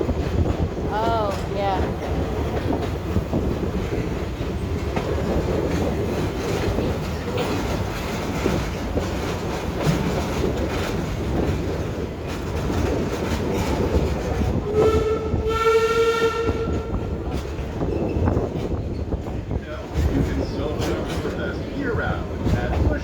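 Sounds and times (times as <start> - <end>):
train rumbling and rail clatter: 0.0 - 23.0
locomotive horn blast: 14.7 - 17.2.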